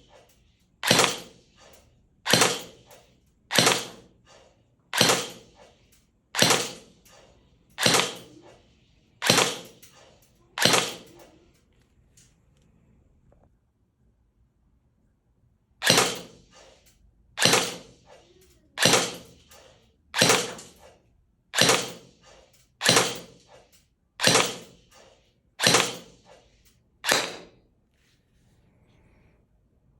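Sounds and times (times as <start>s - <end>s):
airsoft pistol shots: 0.8s - 1.4s, 2.3s - 4.1s, 4.9s - 5.6s, 6.4s - 7.0s, 7.8s - 8.4s, 9.2s - 9.9s, 10.6s - 11.2s, 15.8s - 16.7s, 17.4s - 18.2s, 18.8s - 20.9s, 21.6s - 23.6s, 24.2s - 26.4s, 27.0s - 27.6s.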